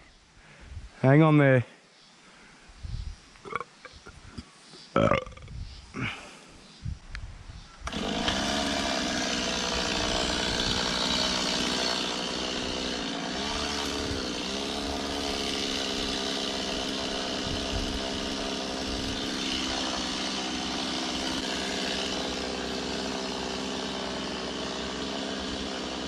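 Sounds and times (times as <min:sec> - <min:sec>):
chainsaw cutting tree: 0:07.8 - 0:26.0.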